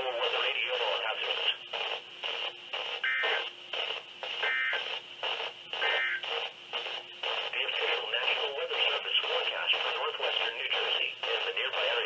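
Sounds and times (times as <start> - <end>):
choppy radio voice: 0.0 - 1.6, 7.6 - 12.0
warbling data bursts: 0.0 - 12.0.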